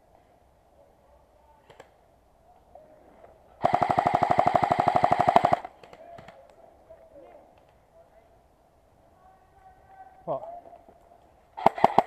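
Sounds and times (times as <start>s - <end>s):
airsoft gun full-auto burst: 3.6s - 5.7s, 11.6s - 12.0s.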